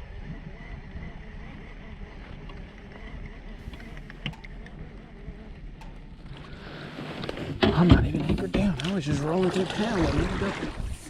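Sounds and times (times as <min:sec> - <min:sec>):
moving water: 0:03.6 - 0:11.0
wind on microphone: 0:09.7 - 0:11.0.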